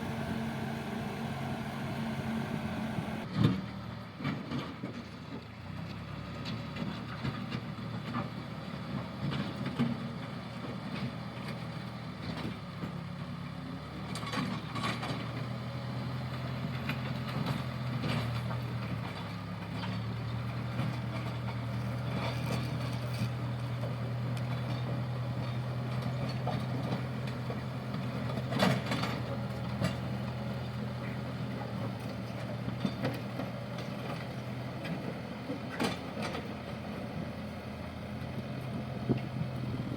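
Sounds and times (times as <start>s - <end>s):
diesel engine running: 0.0s - 3.3s, 15.0s - 39.9s.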